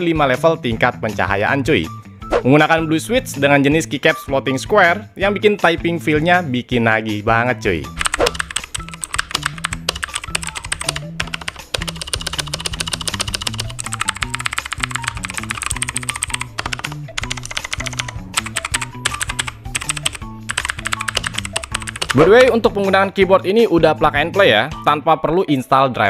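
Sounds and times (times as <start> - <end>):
background music with bass: 0.0 - 26.0
mechanical keyboard typing: 8.0 - 22.6.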